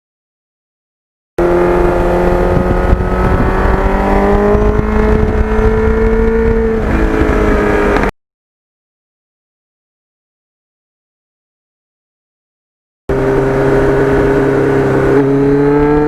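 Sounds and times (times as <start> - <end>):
motorcycle engine accelerating: 1.4 - 8.1, 13.1 - 16.0
wind rumble on microphone: 1.4 - 8.1, 13.1 - 16.0.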